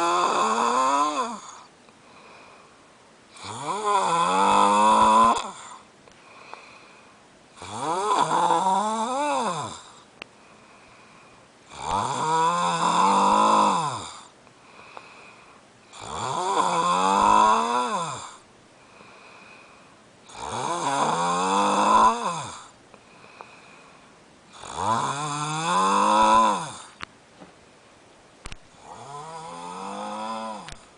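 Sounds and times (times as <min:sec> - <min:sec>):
man snoring loudly: 0:00.0 - 0:01.7, 0:03.3 - 0:05.8, 0:07.6 - 0:10.0, 0:11.7 - 0:14.3, 0:15.9 - 0:18.4, 0:20.3 - 0:22.8, 0:24.5 - 0:27.0, 0:28.7 - 0:30.8.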